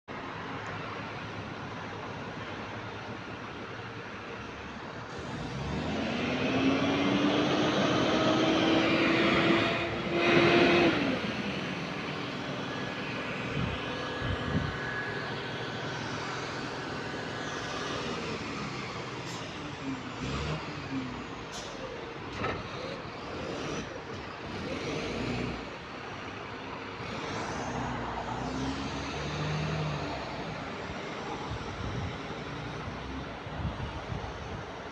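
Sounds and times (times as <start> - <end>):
bus drive whining: 0.1 - 34.9.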